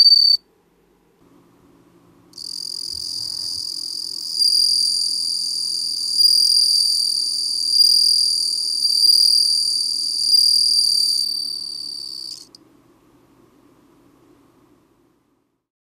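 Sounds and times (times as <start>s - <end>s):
cricket trilling: 0.0s - 0.4s, 2.4s - 12.6s.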